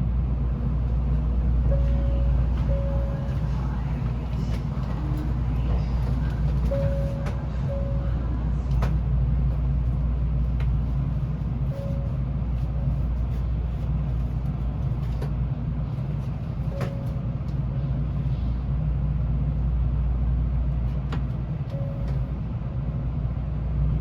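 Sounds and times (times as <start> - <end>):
steady low train hum: 0.0 - 24.0
short faint beeps: 1.7 - 3.6.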